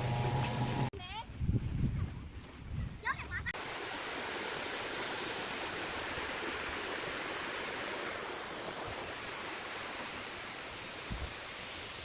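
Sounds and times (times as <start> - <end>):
water flowing over rocks: 3.6 - 12.0.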